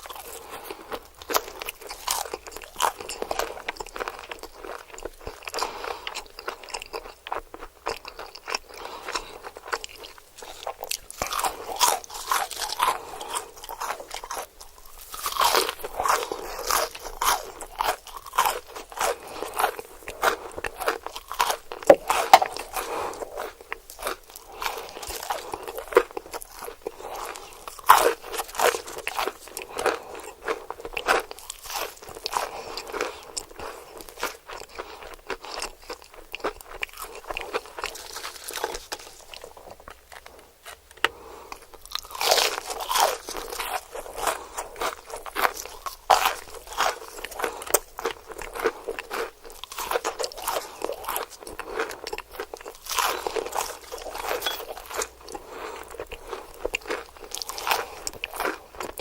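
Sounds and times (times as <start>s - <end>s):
chewing: 0.0s - 59.0s
crunching fried chicken: 0.0s - 59.0s.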